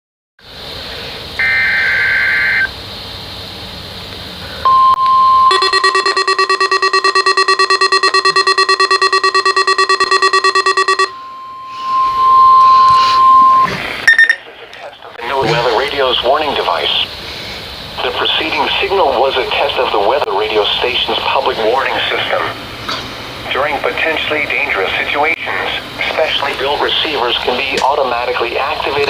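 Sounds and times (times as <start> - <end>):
steady warning tone: 4.6 - 14.4
rapid alarm beeps: 4.7 - 14.4
buzzy data burst: 5.5 - 11.1.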